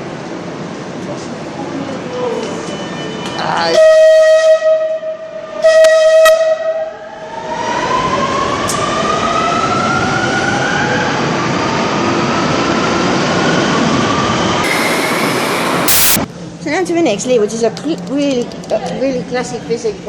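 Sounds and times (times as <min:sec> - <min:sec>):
train rolling rumble: 0:07.5 - 0:16.6
electric traction motors whining: 0:11.8 - 0:16.2
pitched warning tone: 0:14.6 - 0:16.2.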